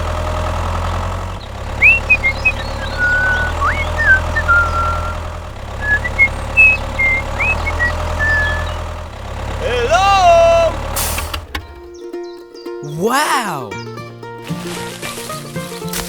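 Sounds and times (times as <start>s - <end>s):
small engine idling: 0.0s - 12.7s
high gliding chirps: 1.8s - 5.2s, 5.8s - 8.8s.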